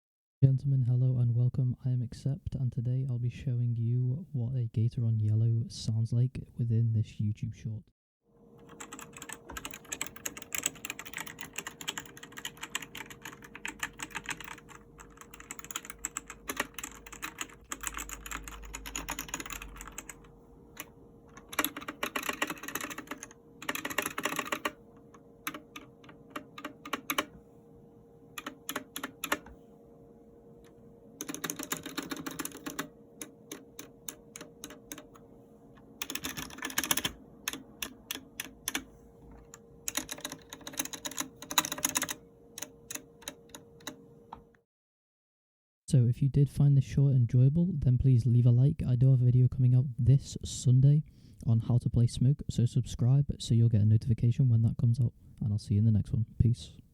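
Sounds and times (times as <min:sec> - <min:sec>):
faint steady hum: 0:00.4 - 0:44.6, 0:45.9 - 0:56.9
typing on mechanical keyboard: 0:08.6 - 0:27.3, 0:28.4 - 0:29.5, 0:31.2 - 0:35.2, 0:36.0 - 0:44.0.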